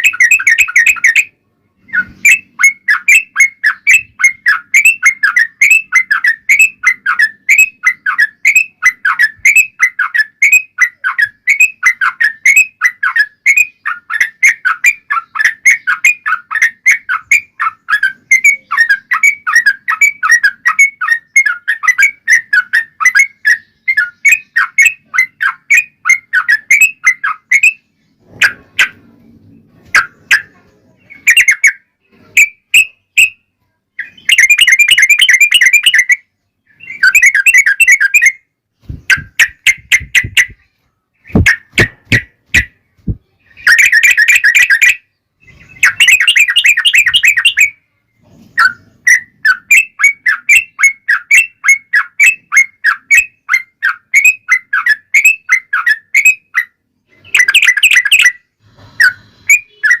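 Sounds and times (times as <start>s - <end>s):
bulbul chattering song: 0.0s - 29.2s, 29.8s - 47.9s, 48.6s - 60.0s
sharp whistled bird notes: 34.0s - 42.8s, 43.4s - 47.8s, 48.6s - 60.0s.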